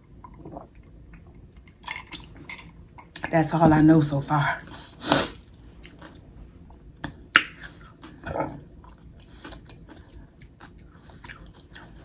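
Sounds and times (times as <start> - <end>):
chewing mouth sounds: 7.0 - 12.0.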